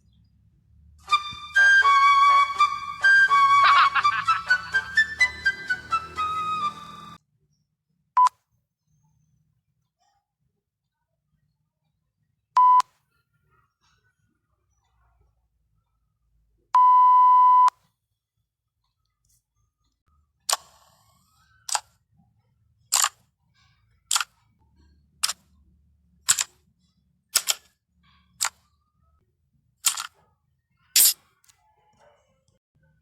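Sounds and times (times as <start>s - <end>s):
short sharp clicks: 26.3s - 26.5s, 27.4s - 27.7s, 29.8s - 30.1s, 31.0s - 31.2s.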